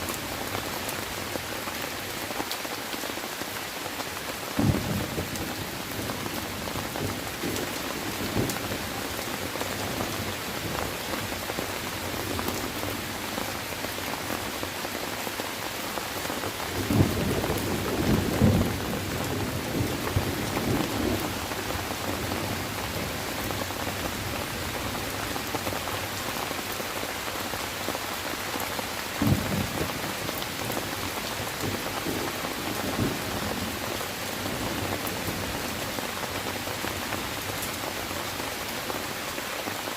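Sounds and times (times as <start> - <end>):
heavy rain falling: 0.0 - 39.9
thunder rumbling: 16.8 - 24.0.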